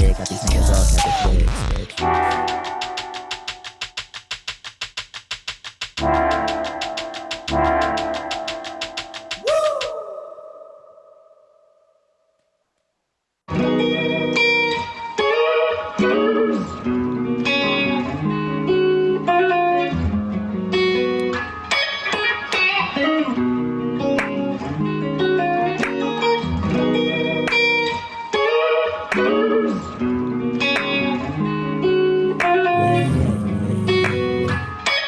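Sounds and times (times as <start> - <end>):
plucked electric guitar music: 13.5 - 35.0.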